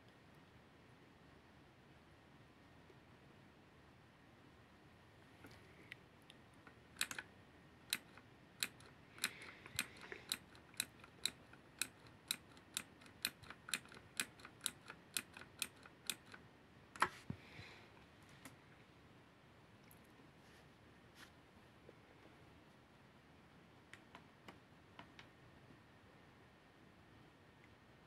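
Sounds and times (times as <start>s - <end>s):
mechanical keyboard key clicks: 7.0s - 7.2s, 7.9s - 16.4s.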